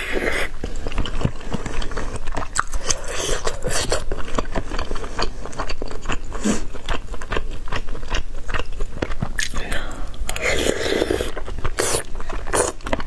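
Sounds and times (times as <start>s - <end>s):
person chewing soft food: 0.0s - 13.0s
wet mouth clicks and smacks: 9.0s - 10.5s.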